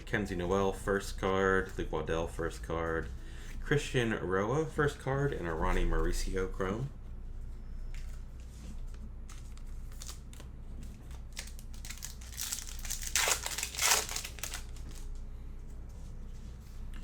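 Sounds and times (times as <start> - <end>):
wrapper crinkling and tearing: 9.3 - 15.1.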